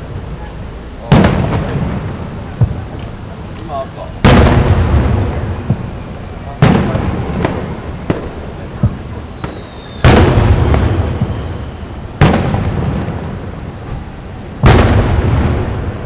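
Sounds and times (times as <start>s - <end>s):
firework booms: 0.0s - 16.0s
firework cracks: 0.0s - 16.0s
firework whistle: 4.3s - 16.0s.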